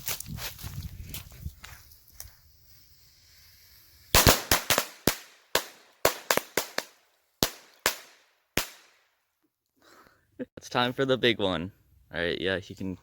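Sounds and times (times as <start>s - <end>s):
firecrackers banging: 4.1s - 9.0s.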